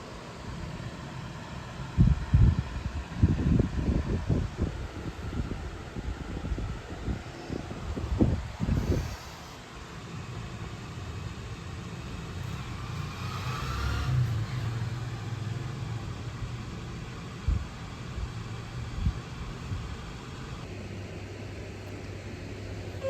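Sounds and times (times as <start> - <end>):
low vehicle rumble: 5.2 - 20.6
rising whine: 7.0 - 20.6.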